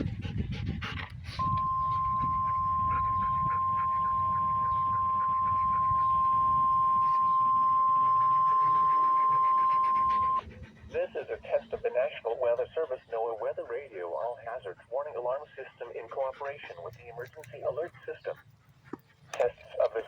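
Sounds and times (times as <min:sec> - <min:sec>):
high-pitched alarm tone: 0:01.4 - 0:10.4.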